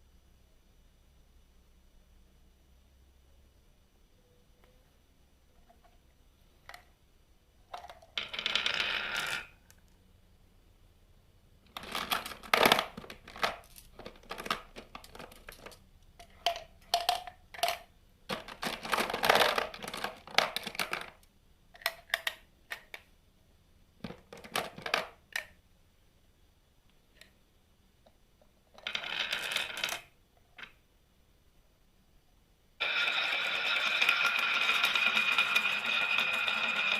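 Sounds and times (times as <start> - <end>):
marbles rolling and clacking: 7.8 - 9.7, 11.7 - 21.2, 28.8 - 30.8, 32.8 - 36.9.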